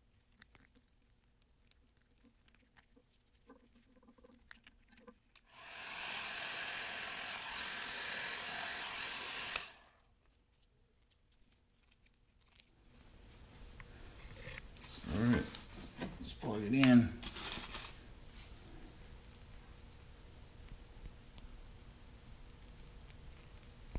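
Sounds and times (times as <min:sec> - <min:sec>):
heat gun blowing: 0:05.5 - 0:10.0.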